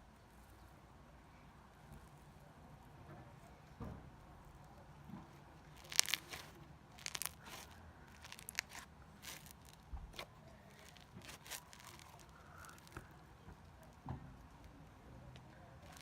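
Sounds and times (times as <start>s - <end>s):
crunchy slime crackling: 4.5s - 16.0s.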